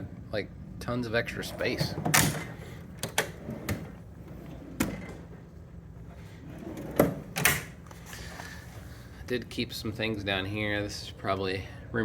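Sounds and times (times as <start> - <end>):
metal drawers opening and shutting: 1.4 - 5.4, 6.2 - 7.8.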